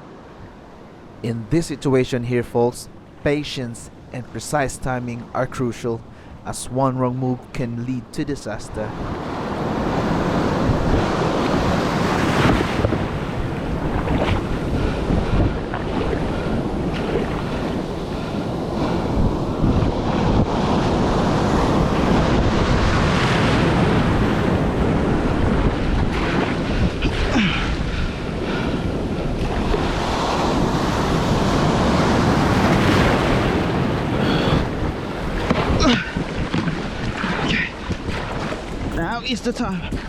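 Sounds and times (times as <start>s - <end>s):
surf breaking around a kayak: 0.0s - 40.0s
wind buffeting microphone: 8.9s - 40.0s.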